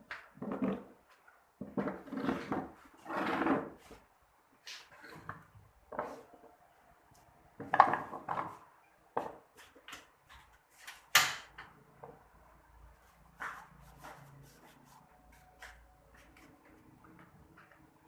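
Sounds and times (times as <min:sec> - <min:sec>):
hard objects knocking and clattering: 0:07.6 - 0:09.9.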